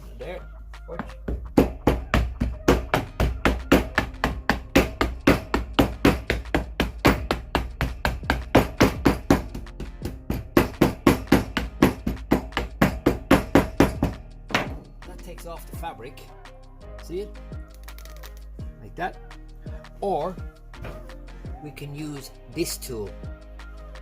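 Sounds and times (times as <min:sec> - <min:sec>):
hammer striking wooden frame: 0:01.4 - 0:14.9.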